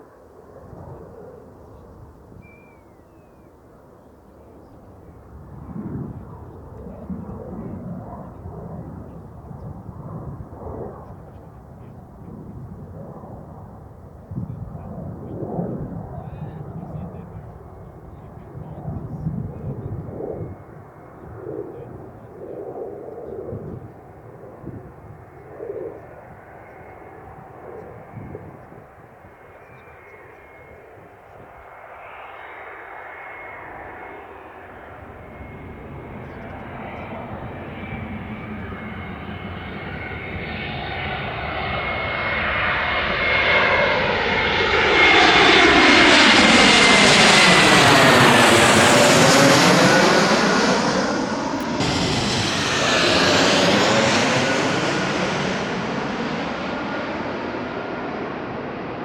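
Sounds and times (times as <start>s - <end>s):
jet flying low overhead: 0.0s - 59.0s
high jet engine whine: 32.0s - 59.0s.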